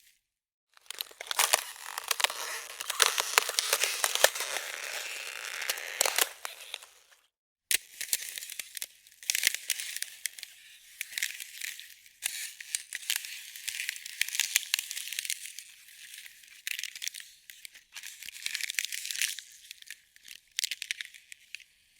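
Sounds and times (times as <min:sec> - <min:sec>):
ice cracking and crackling: 0:00.8 - 0:07.2.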